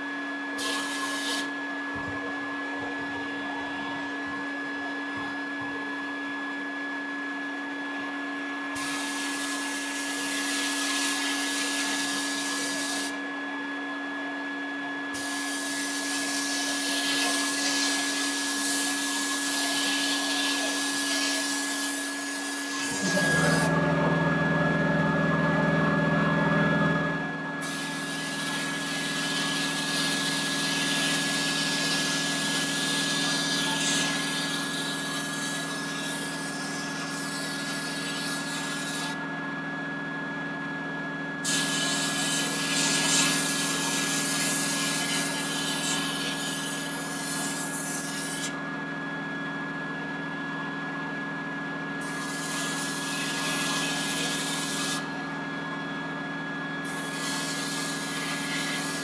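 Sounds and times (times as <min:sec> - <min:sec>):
dust collector motor humming: 0:00.0 - 0:59.0
deep machine sound: 0:22.8 - 0:28.4.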